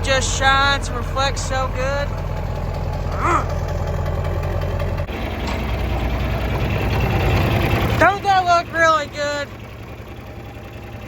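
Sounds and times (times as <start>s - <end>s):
diesel engine idling: 0.0s - 11.0s.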